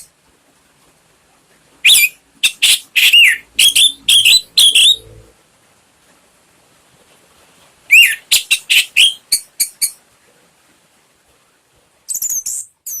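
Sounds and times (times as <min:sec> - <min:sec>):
thrush singing: 0:02.7 - 0:05.3.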